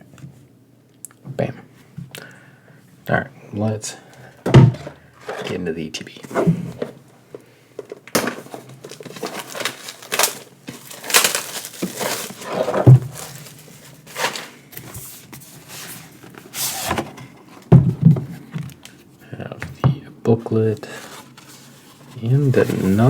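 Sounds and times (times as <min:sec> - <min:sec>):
cardboard lid scraping and knocking: 0:04.5 - 0:05.6, 0:10.7 - 0:18.6
plastic wrapping crinkling: 0:07.8 - 0:16.8, 0:20.7 - 0:23.0.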